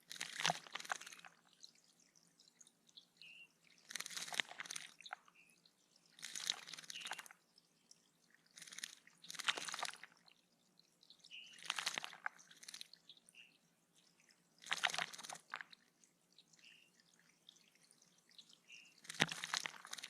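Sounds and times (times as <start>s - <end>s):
bird splashing in water: 3.8s - 5.4s, 6.2s - 7.4s, 8.5s - 10.2s, 11.5s - 12.9s, 14.6s - 15.8s, 18.7s - 20.0s.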